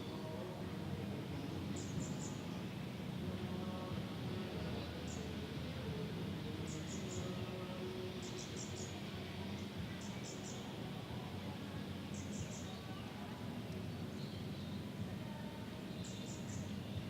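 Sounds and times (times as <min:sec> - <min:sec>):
low city rumble: 0:00.0 - 0:17.0.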